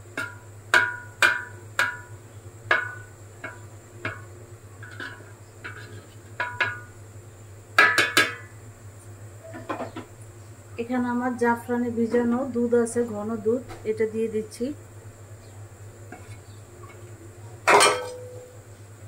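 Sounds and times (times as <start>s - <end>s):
metal utensil clinking on pot: 17.7s - 18.4s.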